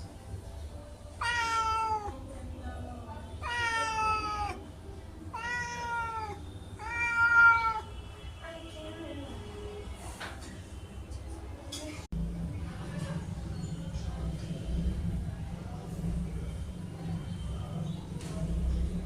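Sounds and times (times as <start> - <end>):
cat meowing: 1.2 - 2.2, 3.4 - 4.6, 5.3 - 7.9.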